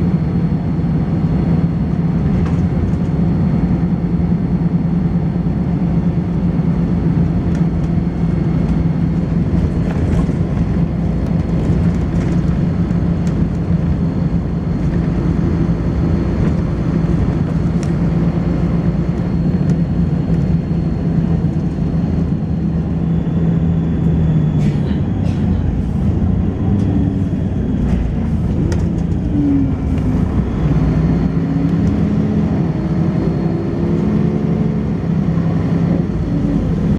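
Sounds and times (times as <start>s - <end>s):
bus diesel engine running: 0.0s - 36.9s
high-pitched whine: 13.0s - 34.9s.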